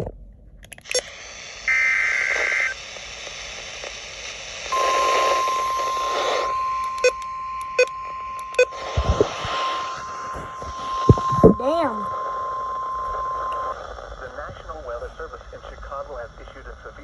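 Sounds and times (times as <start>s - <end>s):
radio static: 0.9s - 17.0s
warbling digital data tones: 1.7s - 2.8s, 4.7s - 14.4s
steady alarm tone: 4.7s - 13.7s
sharp clicks: 6.8s - 9.6s.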